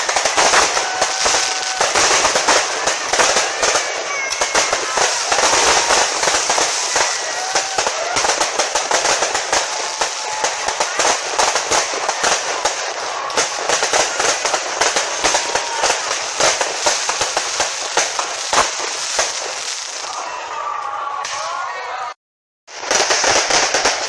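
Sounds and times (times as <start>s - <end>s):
fireworks crackling and banging: 0.0s - 21.6s, 22.7s - 24.0s.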